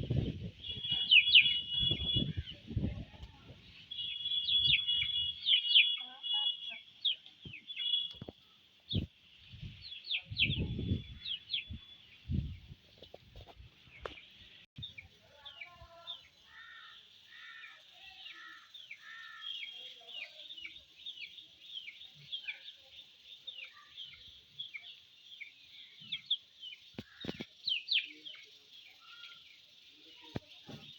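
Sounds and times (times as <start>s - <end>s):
lower bird call: 0.1s - 2.7s, 3.6s - 9.1s
baby chicks peeping: 0.1s - 9.1s, 9.7s - 30.9s.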